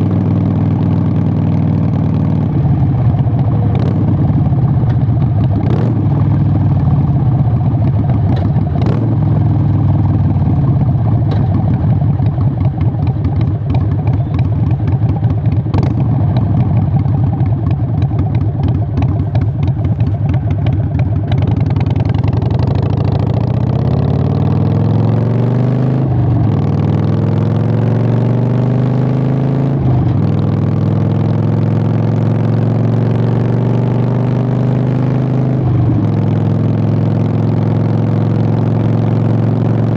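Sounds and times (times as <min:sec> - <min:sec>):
motorcycle engine popping: 0:02.4 - 0:24.8.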